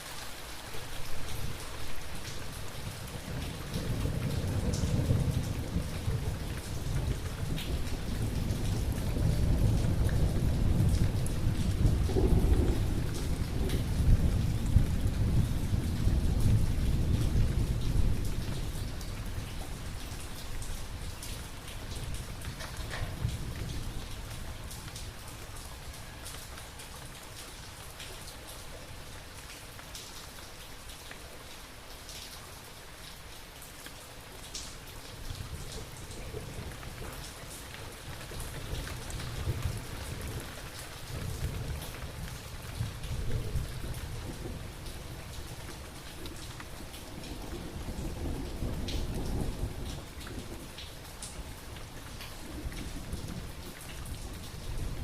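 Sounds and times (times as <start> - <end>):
steady rain: 0.0 - 55.0
low rolling thunder: 2.8 - 25.3, 38.0 - 50.9, 52.4 - 55.0.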